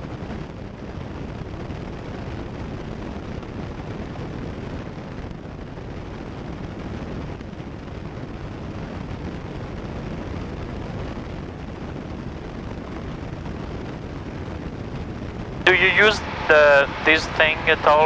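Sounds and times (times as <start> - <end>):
airplane engine and propeller drone: 11.0 - 18.0.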